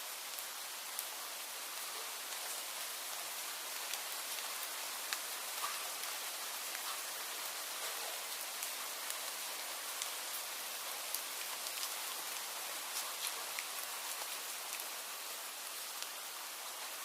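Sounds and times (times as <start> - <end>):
steady rain falling: 0.0 - 17.0
raindrops ticking: 3.6 - 10.5, 11.1 - 15.0.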